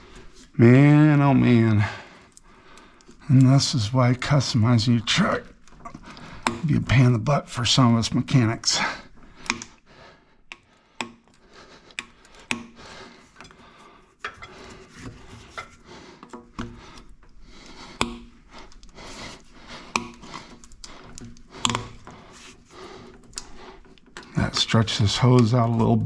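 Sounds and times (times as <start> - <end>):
hand tools clicking and tapping: 5.2 - 6.8, 9.1 - 24.4, 25.0 - 26.0.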